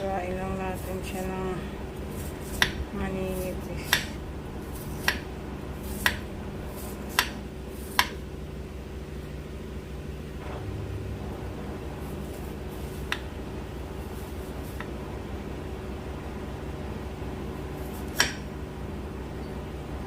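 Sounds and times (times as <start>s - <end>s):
steady low hum: 0.0s - 20.0s
knife tapping cutting board: 7.1s - 8.2s.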